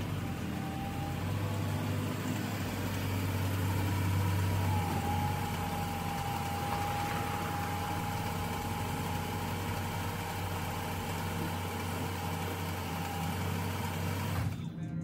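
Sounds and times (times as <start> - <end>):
machine hum: 0.0 - 15.0.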